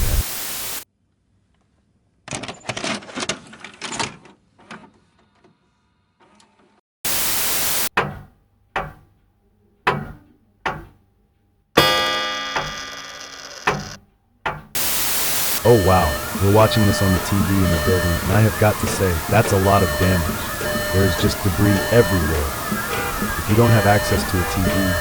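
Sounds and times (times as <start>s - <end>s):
burst of static: 0.0s - 0.8s, 7.1s - 7.9s, 14.8s - 25.0s
ringing buzzing hit: 11.8s - 13.4s.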